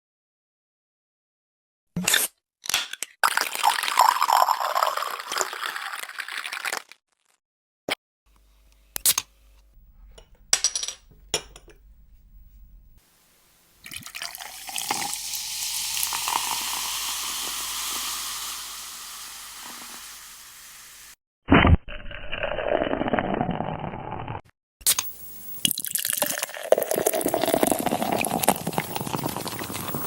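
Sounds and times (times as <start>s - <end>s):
liquid pouring into a glass: 3.2s - 6.8s, 13.8s - 21.0s, 25.6s - 30.0s.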